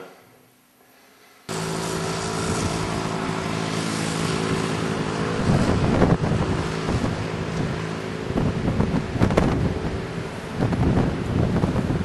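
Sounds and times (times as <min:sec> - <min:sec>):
motor running steadily: 0:01.5 - 0:12.0
wind buffeting microphone: 0:01.9 - 0:12.0.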